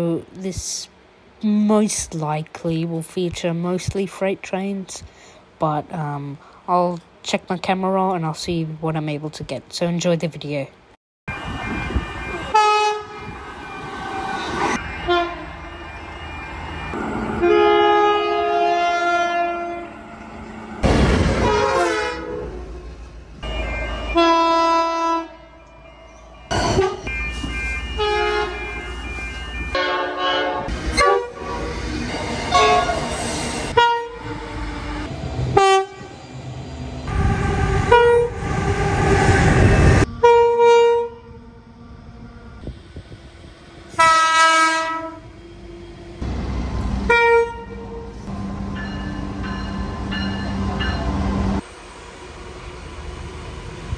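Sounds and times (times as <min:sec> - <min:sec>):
passing train noise: 0:00.0 - 0:05.7, 0:11.3 - 0:53.9
train horn blasts: 0:12.4 - 0:13.4, 0:14.8 - 0:15.5, 0:17.4 - 0:20.3, 0:21.3 - 0:25.7, 0:26.5 - 0:27.1, 0:28.0 - 0:28.7, 0:29.8 - 0:31.6, 0:32.5 - 0:33.1, 0:33.7 - 0:34.7, 0:35.5 - 0:36.2, 0:37.1 - 0:38.9, 0:40.0 - 0:41.4, 0:43.9 - 0:46.2, 0:47.0 - 0:48.3.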